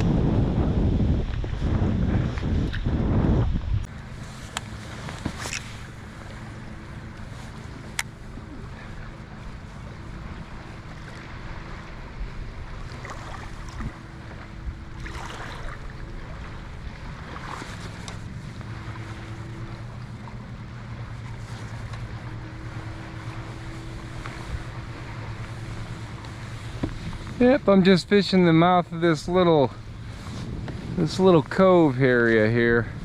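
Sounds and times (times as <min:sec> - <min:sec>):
water moving around kayak: 0:00.0 - 0:33.0
wind buffeting microphone: 0:00.0 - 0:33.0
soft splashes: 0:04.2 - 0:28.5.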